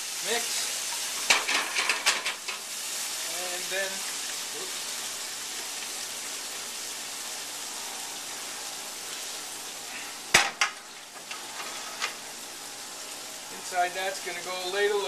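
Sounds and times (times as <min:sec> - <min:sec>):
vegetables sizzling in pans: 0:00.0 - 0:15.0.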